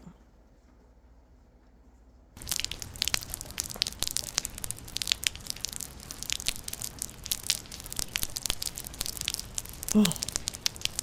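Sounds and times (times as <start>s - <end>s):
rain patter: 2.4s - 11.0s.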